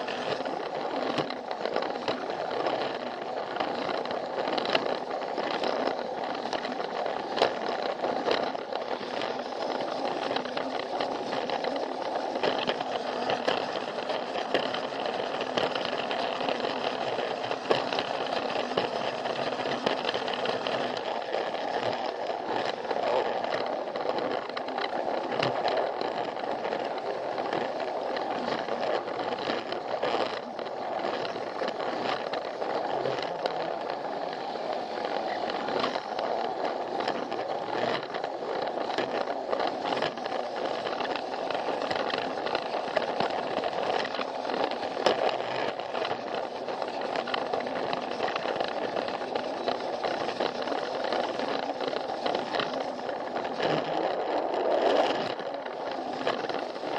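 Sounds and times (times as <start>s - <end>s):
plastic wheels rattling on track: 0.0s - 56.9s
toy motor whirring: 0.0s - 56.9s.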